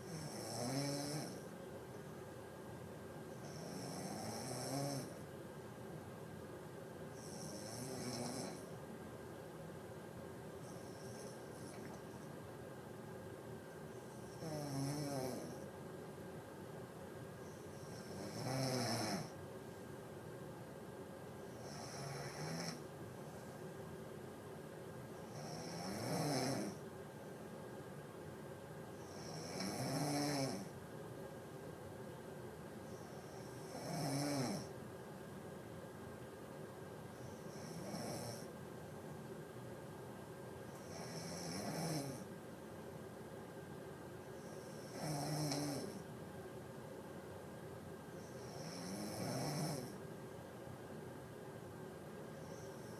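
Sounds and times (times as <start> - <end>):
person snoring: 0.0 - 1.4, 3.4 - 5.2, 7.2 - 8.7, 14.3 - 15.6, 17.8 - 19.3, 21.6 - 22.8, 25.3 - 26.8, 29.1 - 30.7, 33.0 - 34.7, 40.9 - 42.2, 44.5 - 46.0, 48.3 - 50.0.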